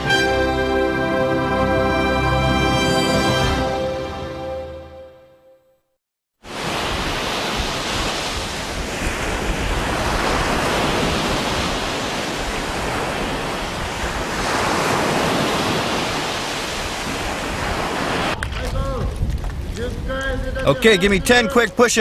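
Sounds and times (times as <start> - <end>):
sea surf: 6.4 - 18.5
wind buffeting microphone: 6.7 - 22.0.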